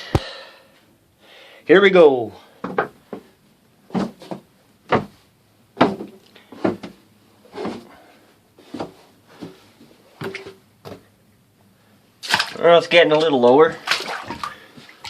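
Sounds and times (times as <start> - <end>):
footsteps going down stairs: 8.6 - 11.0.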